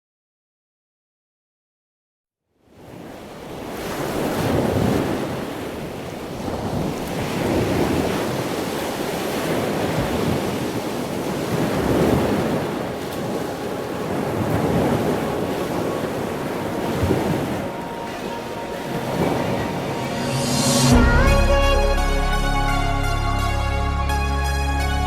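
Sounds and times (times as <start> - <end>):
ocean surf rolling in: 2.8 - 23.2
wind buffeting microphone: 3.4 - 21.0.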